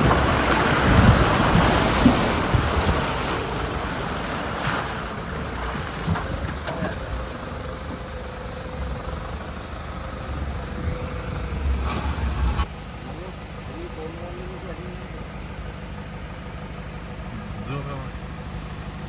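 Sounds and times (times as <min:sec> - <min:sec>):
wind on microphone: 0:00.0 - 0:03.8, 0:08.7 - 0:12.7
vehicle engine running: 0:00.0 - 0:19.0.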